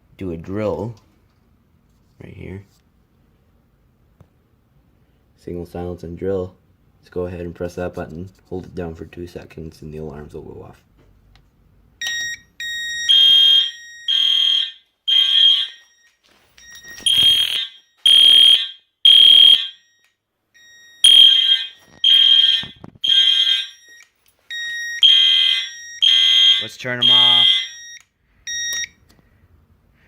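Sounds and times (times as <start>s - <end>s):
fire alarm horn blasts: 12.6s - 16.1s, 16.9s - 23.9s, 24.5s - 28.9s.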